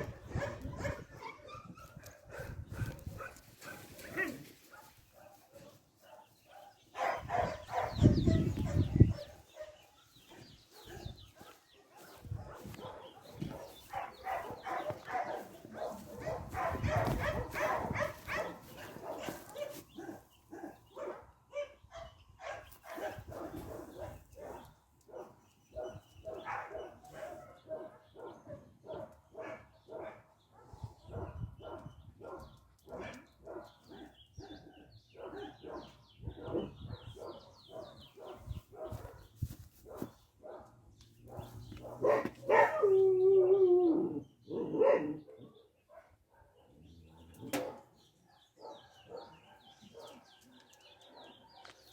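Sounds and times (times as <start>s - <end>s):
dog barking and yipping: 0.0s - 9.8s, 10.7s - 34.1s, 41.3s - 43.0s, 44.5s - 46.5s.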